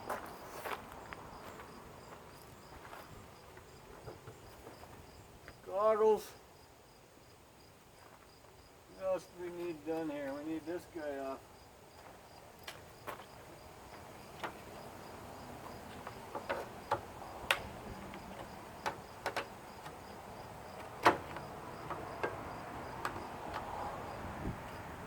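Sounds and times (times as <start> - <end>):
crickets chirping: 0.0 - 25.0
tools and parts knocking: 16.0 - 20.0, 20.8 - 23.7.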